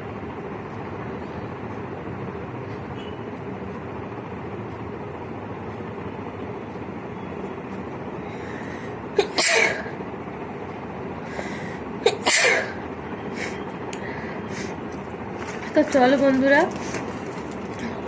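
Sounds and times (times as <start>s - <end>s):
steady background hum: 0.0s - 18.0s
person sneezing: 9.2s - 9.9s, 12.0s - 12.8s.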